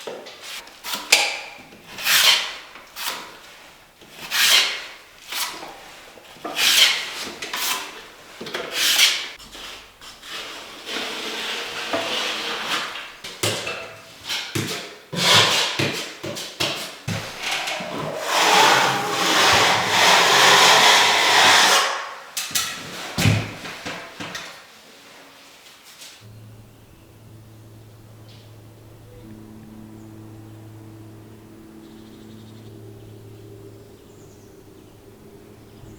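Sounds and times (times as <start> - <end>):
hand tool scraping rough surface: 17.1 - 22.1.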